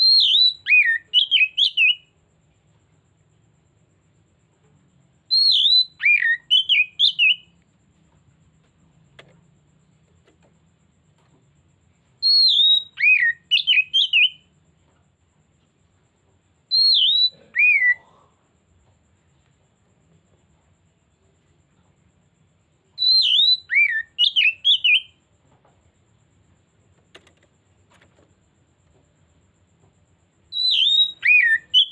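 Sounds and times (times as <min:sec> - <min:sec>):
bird singing whistled phrases: 0:00.0 - 0:02.1, 0:05.3 - 0:07.5, 0:12.2 - 0:14.5, 0:16.7 - 0:18.1, 0:23.0 - 0:25.2, 0:30.5 - 0:31.9.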